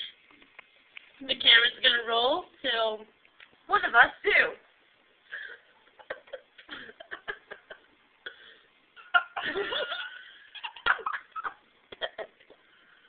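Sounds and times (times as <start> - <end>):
women giggling and laughing: 5.4 - 7.9, 9.0 - 12.5.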